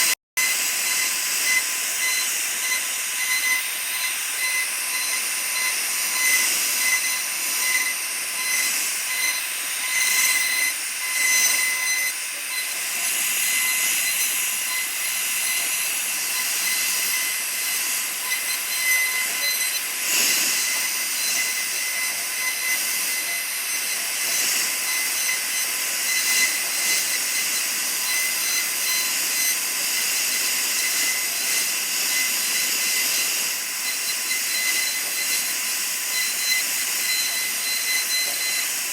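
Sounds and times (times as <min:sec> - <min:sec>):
bit cutting wood hiss: 0:00.0 - 0:38.9
router spindle whine: 0:00.0 - 0:38.9.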